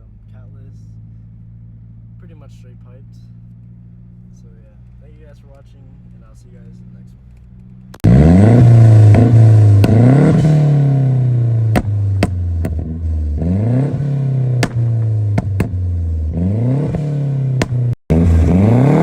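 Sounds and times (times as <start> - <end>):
car engine revving: 5.8 - 19.0
exhaust pops: 7.2 - 18.6.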